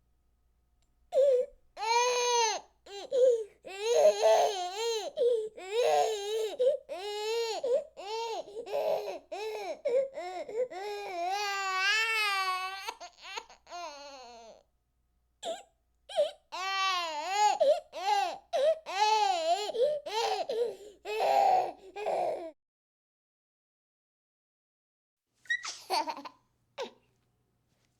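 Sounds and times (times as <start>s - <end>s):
baby crying: 1.2s - 14.6s, 15.4s - 22.6s.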